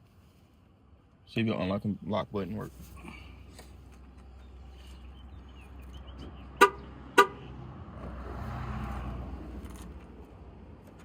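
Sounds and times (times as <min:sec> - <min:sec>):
car horn chirping: 0:06.6 - 0:07.5.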